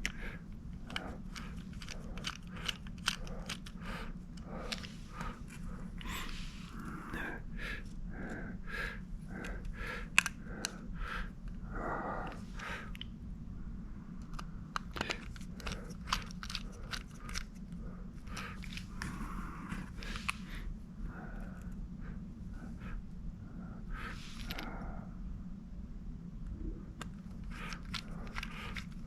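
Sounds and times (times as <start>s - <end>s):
small screws and metal parts rattling: 0.0s - 6.3s, 14.2s - 19.1s, 27.0s - 29.0s
steady low hum: 0.0s - 29.0s.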